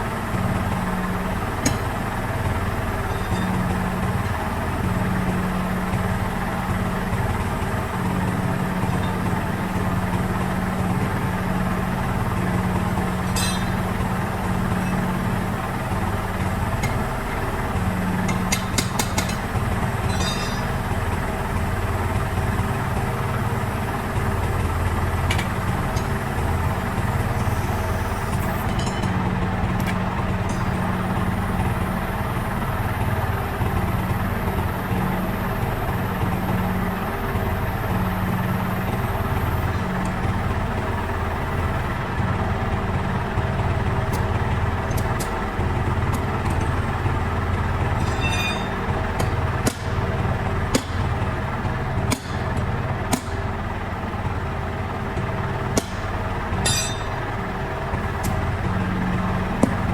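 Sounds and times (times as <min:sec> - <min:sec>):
engine idling: 0:00.0 - 0:59.9
sharp metallic knocks: 0:13.2 - 0:13.9, 0:18.2 - 0:20.9, 0:28.6 - 0:31.0, 0:48.0 - 0:50.0, 0:50.7 - 0:51.1, 0:52.1 - 0:53.4, 0:55.8 - 0:57.4.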